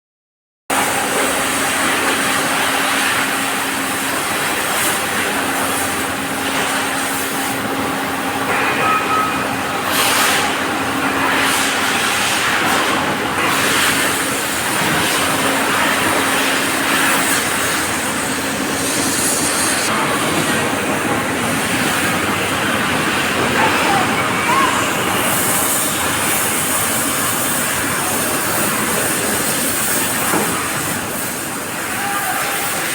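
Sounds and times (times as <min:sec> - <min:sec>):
gas welding torch hissing: 0:12.3 - 0:19.9, 0:24.8 - 0:32.9.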